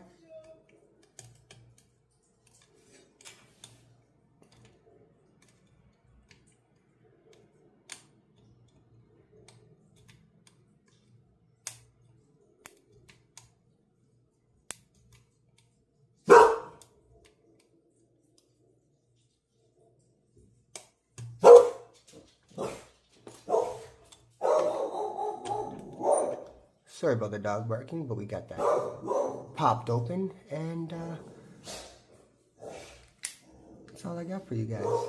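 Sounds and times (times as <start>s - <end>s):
dog barking: 16.2s - 16.8s, 21.4s - 21.9s, 22.6s - 26.6s, 28.6s - 29.6s, 34.8s - 35.0s.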